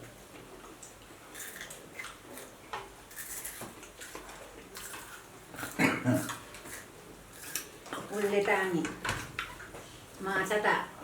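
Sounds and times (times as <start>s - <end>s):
chewing: 0.6s - 8.1s.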